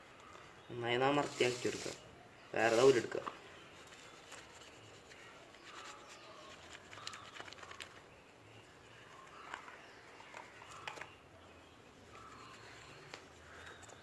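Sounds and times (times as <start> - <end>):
faint bird calls: 0.0 - 14.0
cloth rubbing on phone screen: 1.2 - 3.2.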